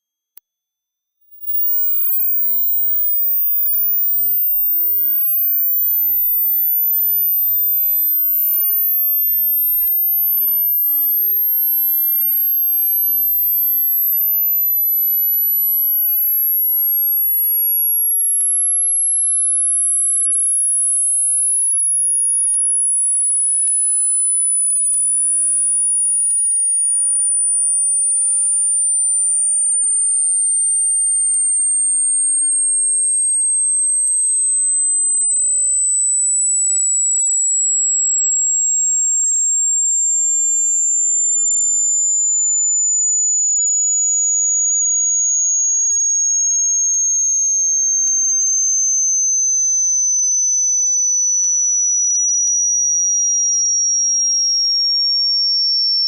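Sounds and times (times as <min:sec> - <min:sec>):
high sine-wave tone gliding lower: 0:01.3 - 0:16.0, 0:27.0 - 0:53.7.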